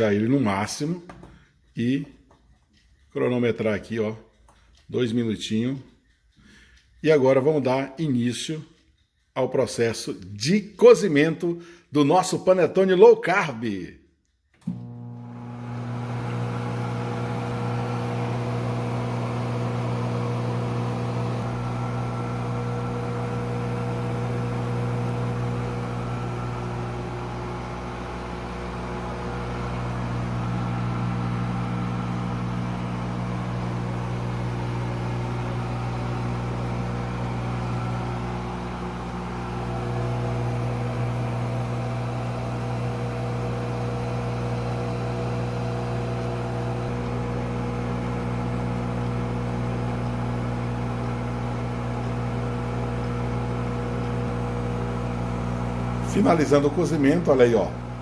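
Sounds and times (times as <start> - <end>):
microwave oven humming: 14.6 - 58.0.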